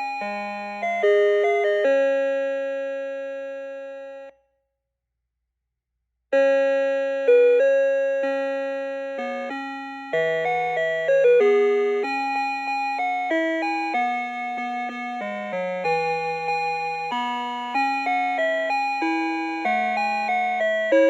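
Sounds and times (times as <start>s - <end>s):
electronic clock chime tune: 19.0s - 21.0s.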